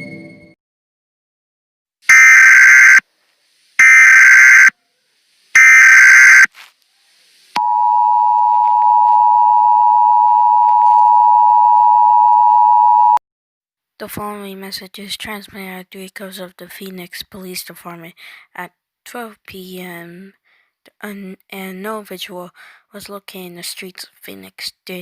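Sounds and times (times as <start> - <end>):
digital data tone bursts: 2.1 - 3.0, 3.8 - 4.7, 5.6 - 6.5
dual-tone attention signal: 2.1 - 3.0, 3.8 - 4.7, 5.6 - 6.5.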